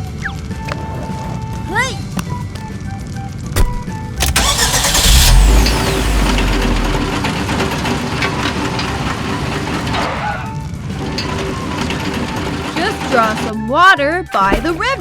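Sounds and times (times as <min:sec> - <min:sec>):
cartoon excavator engine rumble: 0:04.2 - 0:15.0.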